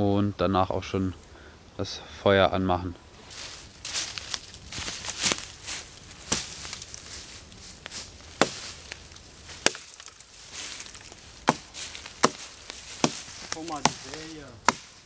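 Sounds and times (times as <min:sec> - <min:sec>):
axe chopping wood: 0:06.3 - 0:06.6, 0:08.4 - 0:08.8, 0:09.6 - 0:10.2, 0:11.4 - 0:15.0.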